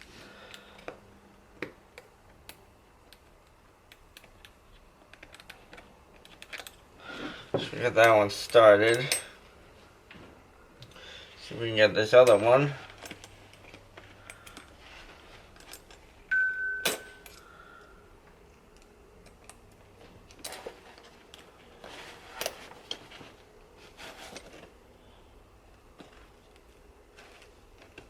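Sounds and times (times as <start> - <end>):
small metal hardware clinking: 8.0 - 9.4, 12.1 - 14.7, 15.6 - 17.5
short high tone: 16.3 - 17.2.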